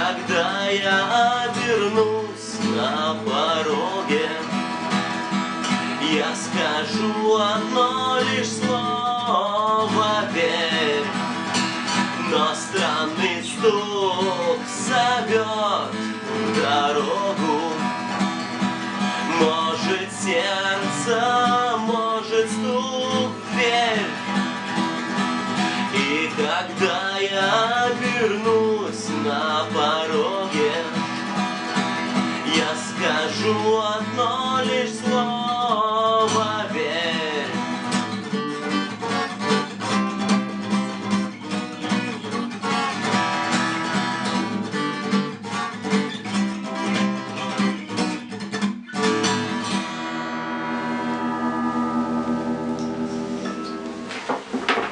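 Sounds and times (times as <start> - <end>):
man singing: 0.0 - 39.6
acoustic guitar strummed: 0.0 - 54.9.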